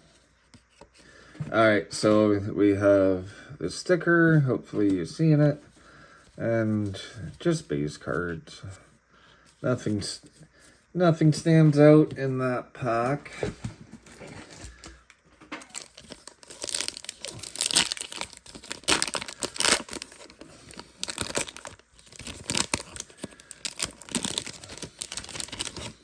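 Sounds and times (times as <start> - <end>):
wax paper wrapper crinkling: 14.0 - 26.0.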